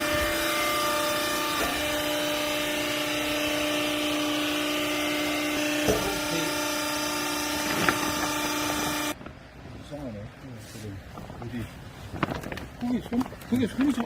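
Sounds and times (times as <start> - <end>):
machinery humming: 0.0 - 9.2.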